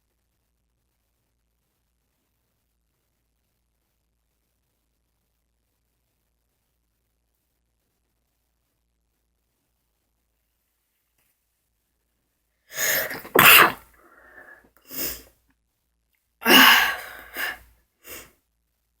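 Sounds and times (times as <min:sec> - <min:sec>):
child sneezing: 0:12.7 - 0:15.2, 0:16.4 - 0:18.2.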